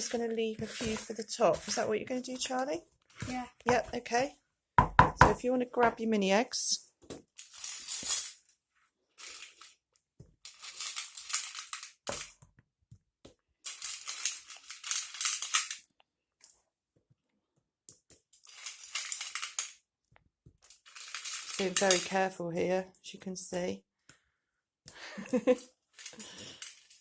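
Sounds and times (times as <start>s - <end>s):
candy bag crinkling and rattling: 7.3s - 8.4s, 9.2s - 9.8s, 10.4s - 12.4s, 13.6s - 15.9s, 18.4s - 19.8s, 20.6s - 22.2s, 25.9s - 27.0s.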